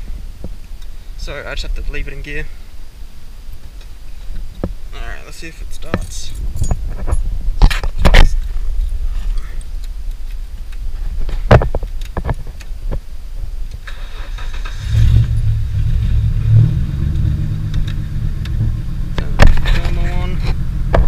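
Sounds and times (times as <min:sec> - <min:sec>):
car engine starting and idling: 0:13.6 - 0:21.0.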